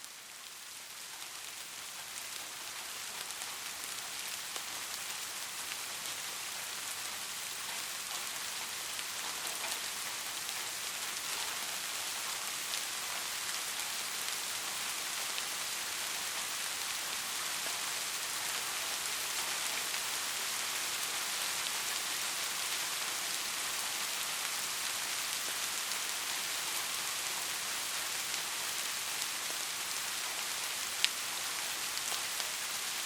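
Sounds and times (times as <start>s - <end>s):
soft rain tapping on surface: 0.0s - 33.0s.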